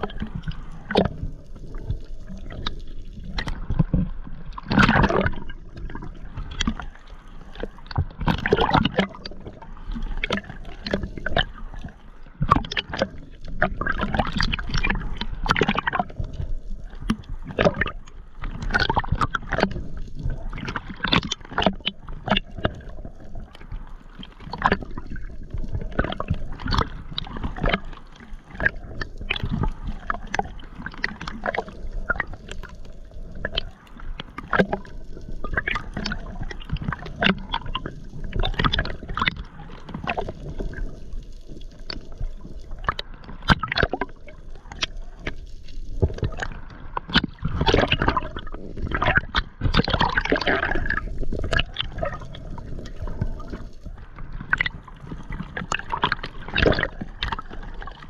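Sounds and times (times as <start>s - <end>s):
water sloshing and gurgling: 0.0s - 58.0s
splashes and knocks: 46.0s - 52.2s.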